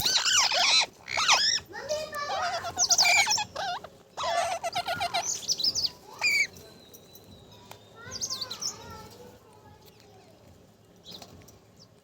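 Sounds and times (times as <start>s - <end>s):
parrot chattering: 0.0s - 1.6s, 2.2s - 5.4s.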